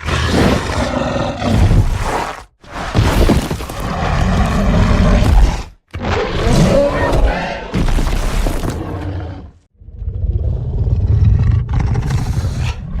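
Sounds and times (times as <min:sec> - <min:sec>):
deep growling dinosaur roars: 0:08.7 - 0:13.0.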